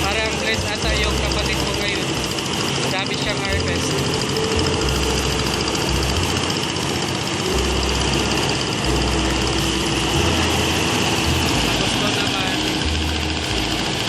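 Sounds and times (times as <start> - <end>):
engine running steadily: 0.0 - 14.0.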